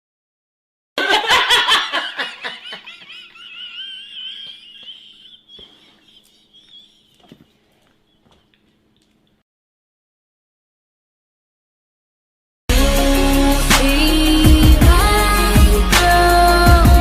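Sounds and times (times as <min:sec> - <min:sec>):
person laughing hard: 0:01.0 - 0:07.3.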